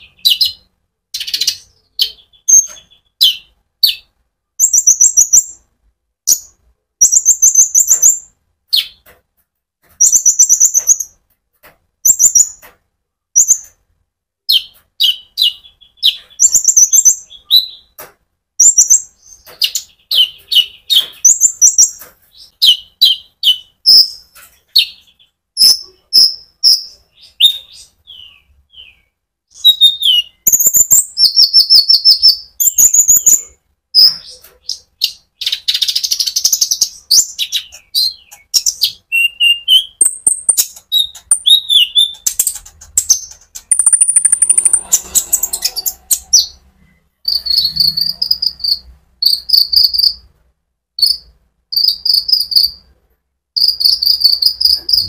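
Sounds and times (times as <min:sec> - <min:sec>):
bird singing chirps and trills: 0:00.0 - 0:05.6, 0:06.3 - 0:09.1, 0:12.0 - 0:12.6, 0:14.5 - 0:18.0, 0:18.6 - 0:46.6, 0:47.2 - 0:50.3.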